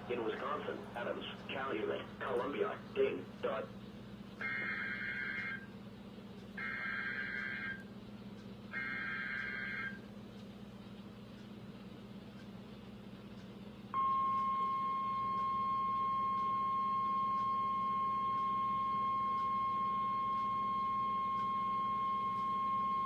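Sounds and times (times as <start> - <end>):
faint radio hiss: 0.0 - 13.9
steady alarm beep: 4.4 - 5.7, 6.6 - 7.8, 8.7 - 10.0, 14.0 - 23.0.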